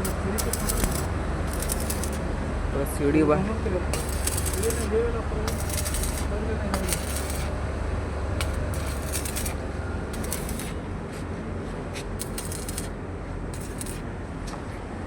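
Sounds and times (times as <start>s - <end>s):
welding arc crackling: 0.0s - 2.2s, 3.9s - 7.6s, 8.4s - 10.9s, 12.2s - 13.0s, 13.6s - 14.0s
steady low hum: 0.0s - 15.0s.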